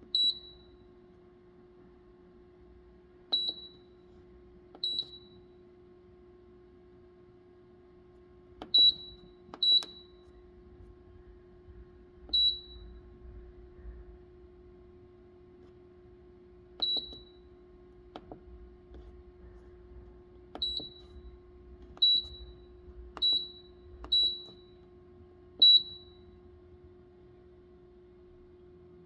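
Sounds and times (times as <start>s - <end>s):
steady low hum: 0.0s - 29.0s
short high keypad beeps: 3.3s - 3.9s, 8.7s - 10.3s, 16.8s - 17.4s, 20.6s - 21.2s, 23.2s - 24.8s.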